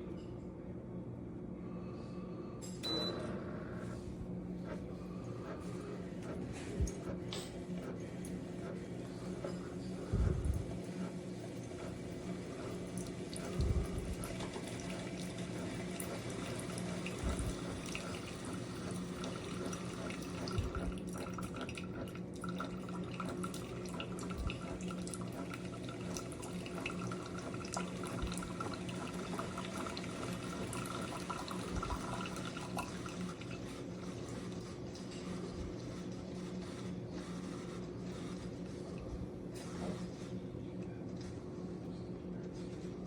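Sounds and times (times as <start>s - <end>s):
water running: 7.9s - 36.0s.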